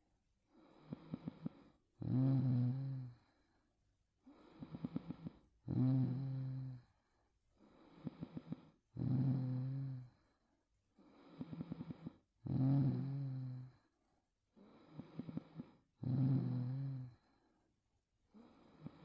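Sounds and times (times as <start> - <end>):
woman snoring: 0.6 - 3.3, 4.3 - 6.9, 7.8 - 10.2, 11.1 - 13.8, 14.7 - 17.3, 18.4 - 19.0.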